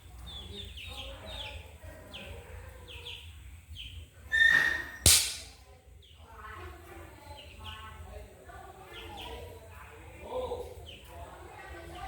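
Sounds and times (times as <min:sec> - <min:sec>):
chick peeping: 0:00.0 - 0:04.2
sharp knock: 0:05.1 - 0:05.5.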